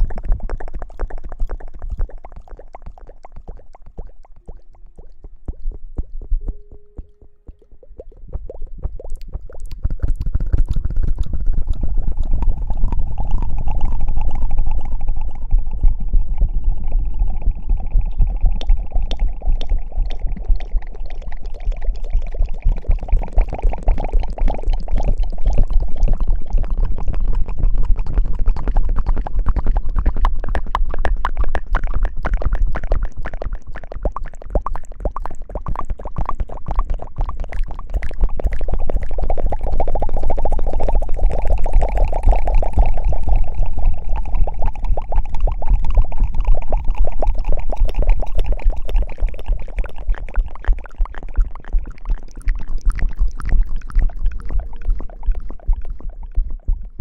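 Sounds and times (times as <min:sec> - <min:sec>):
low rumble: 0:04.5 - 0:23.0, 0:50.1 - 0:57.0
wet crackling and squishing: 0:31.8 - 0:57.0.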